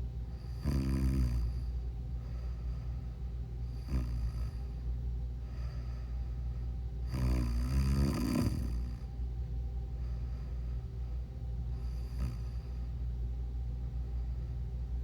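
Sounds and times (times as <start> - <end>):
steady low hum: 0.0 - 15.0
person snoring: 0.5 - 1.6, 3.7 - 4.6, 7.0 - 9.0, 11.8 - 12.6.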